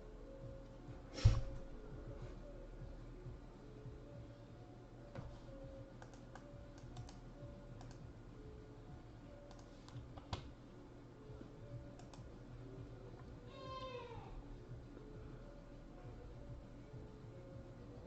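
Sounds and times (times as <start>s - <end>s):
typing on computer keyboard: 6.0s - 7.2s, 7.8s - 8.0s.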